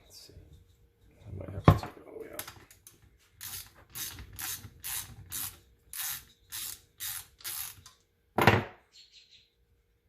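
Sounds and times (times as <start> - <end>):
ratchet wrench clicking: 3.4 - 8.0.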